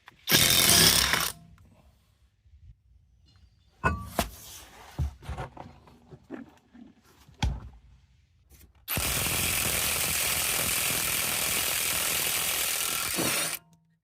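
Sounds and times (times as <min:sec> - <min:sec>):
power tool running: 0:08.9 - 0:13.6.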